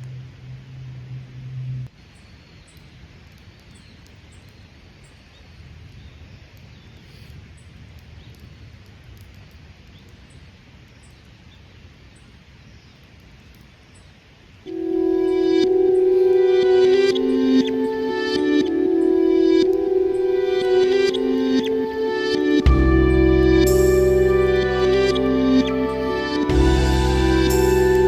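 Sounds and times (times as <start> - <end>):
low steady hum: 0.0 - 4.8, 14.6 - 28.0.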